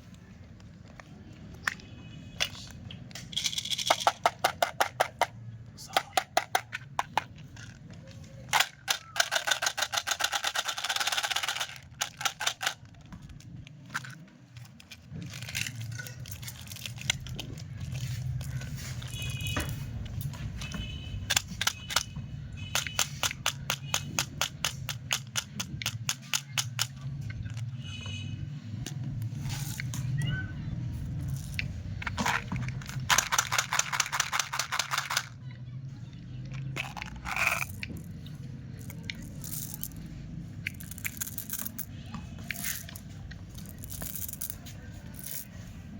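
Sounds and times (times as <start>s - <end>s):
plastic squeaks: 11.6s - 35.4s, 36.4s - 39.5s.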